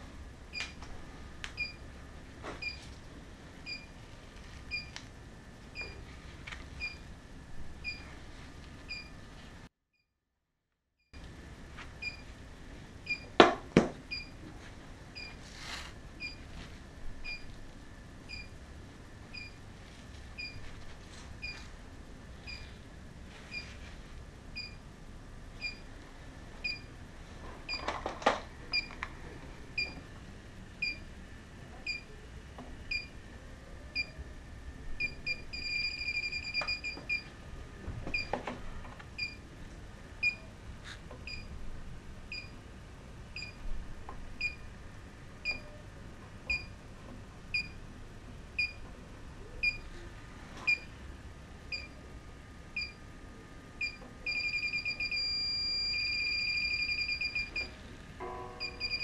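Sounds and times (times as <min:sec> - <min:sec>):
leak detector beeping: 0:13.1 - 0:13.3, 0:35.0 - 0:37.3, 0:45.4 - 0:45.8, 0:53.8 - 0:57.8, 0:58.6 - 0:59.0.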